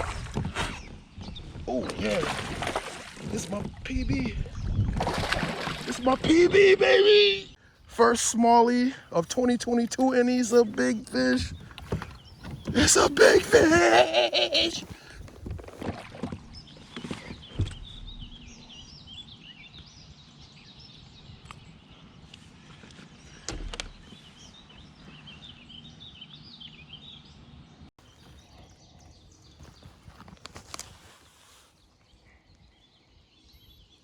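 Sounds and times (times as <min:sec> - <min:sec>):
small birds chirping: 0:07.4 - 0:15.8, 0:28.0 - 0:34.0.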